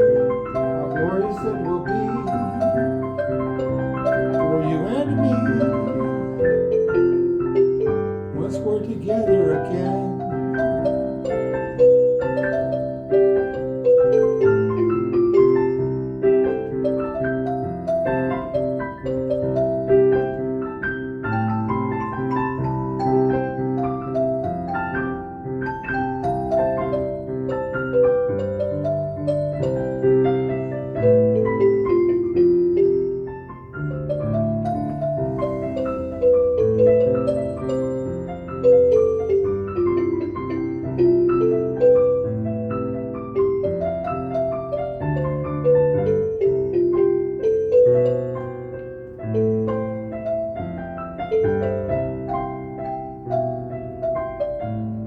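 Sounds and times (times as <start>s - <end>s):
keyboard melody with held chords: 0.0s - 55.0s.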